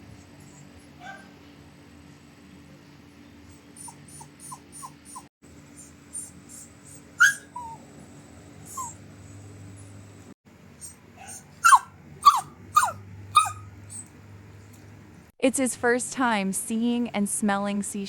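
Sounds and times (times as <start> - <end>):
puppy whimpering: 3.6 - 7.8, 8.7 - 9.0, 10.8 - 14.2.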